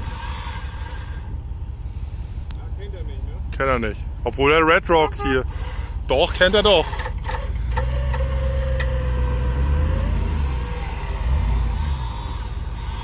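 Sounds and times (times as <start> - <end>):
vehicle engine rumbling: 0.0 - 13.0
thin whine: 6.6 - 13.0.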